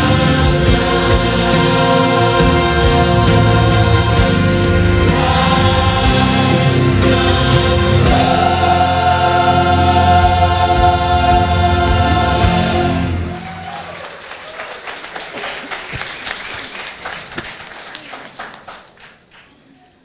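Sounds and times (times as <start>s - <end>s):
choir singing chord: 0.0s - 13.6s
bass accompaniment: 0.0s - 13.8s
applause: 13.1s - 19.6s.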